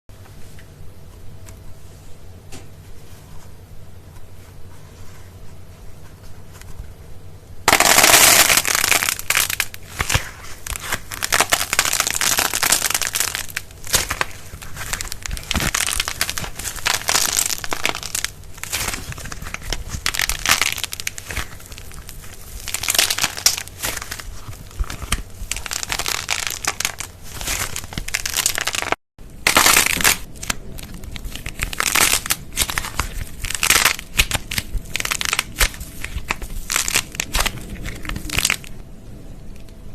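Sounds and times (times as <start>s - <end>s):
slime crackling and popping: 7.7s - 38.8s.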